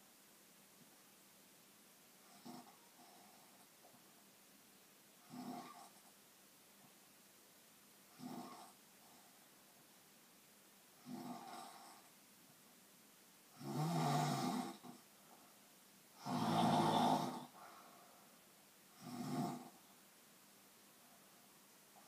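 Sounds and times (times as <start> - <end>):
loud snoring: 2.2 - 3.6, 5.2 - 6.0, 8.2 - 8.8, 11.0 - 12.1, 13.6 - 15.0, 16.2 - 17.6, 18.9 - 19.8.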